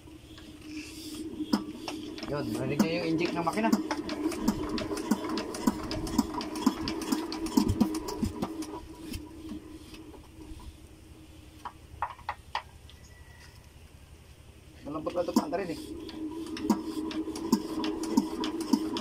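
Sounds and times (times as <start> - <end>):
diesel generator engine knocking: 1.4 - 8.7.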